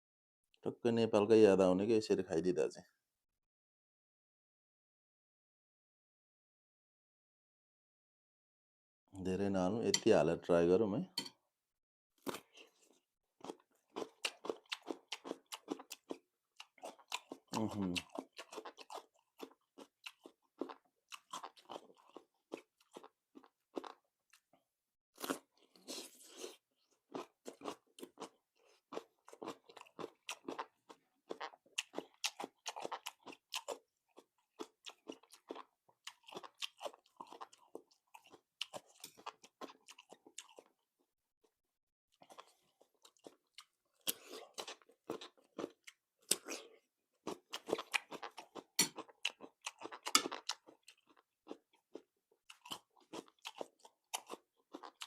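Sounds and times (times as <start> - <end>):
cucumber being bitten and chewed: 12.2 - 24.5, 25.2 - 40.8, 42.2 - 55.0.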